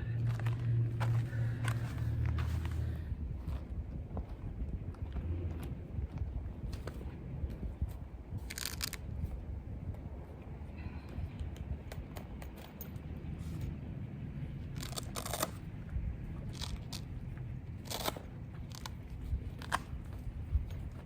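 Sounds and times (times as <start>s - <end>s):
low rumble: 0.0s - 21.0s
solar panel crunching and clicking: 8.4s - 9.1s, 17.8s - 21.0s.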